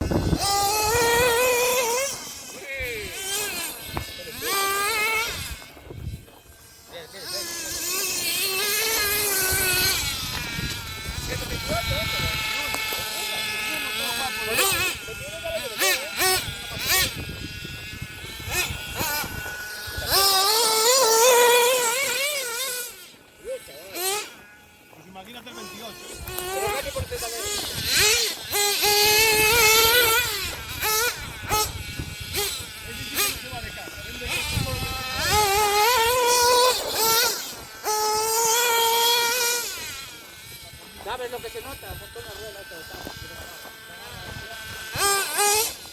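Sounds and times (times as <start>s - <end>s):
nitro engine revving: 0.0s - 45.9s.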